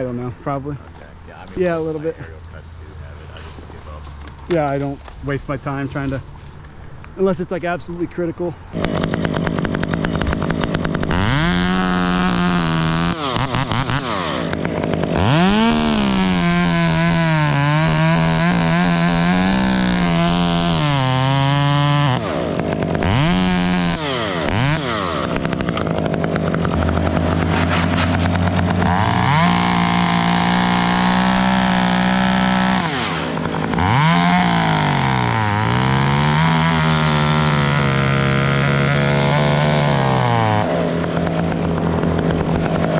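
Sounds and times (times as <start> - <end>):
low steady engine hum: 0.2 - 7.3
chainsaw revving and cutting wood: 1.3 - 2.4, 8.6 - 42.9.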